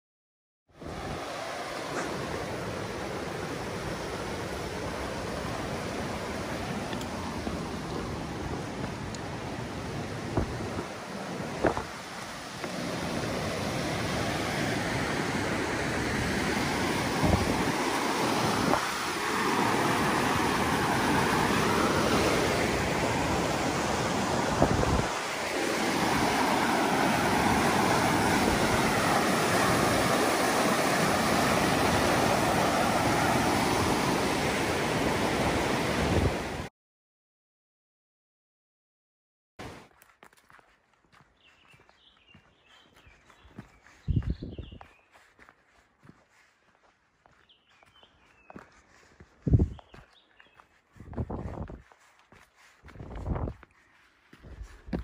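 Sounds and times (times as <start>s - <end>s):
fast river rushing: 0.8s - 36.7s.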